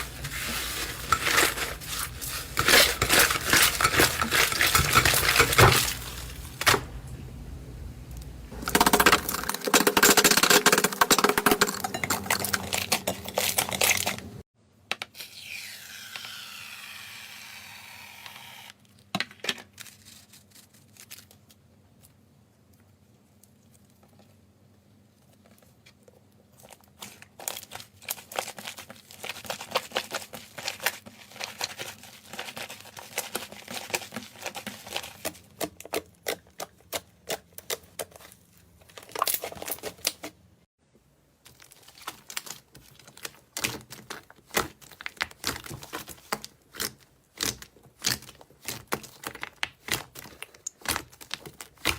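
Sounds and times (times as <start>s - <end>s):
slime crackling and popping: 27.2s - 40.2s, 41.5s - 51.9s.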